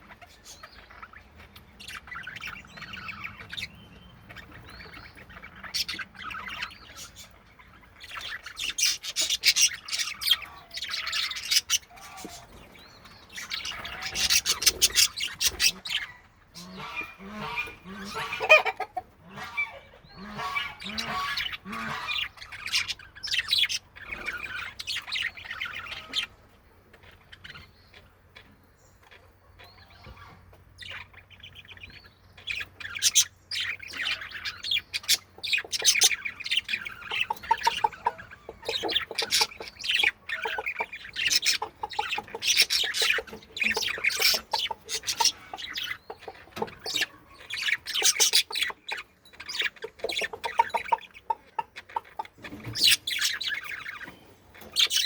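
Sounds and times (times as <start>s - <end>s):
budgerigars chattering and chirping: 0.0s - 55.0s
budgerigar squawks: 13.4s - 26.3s, 32.9s - 54.1s.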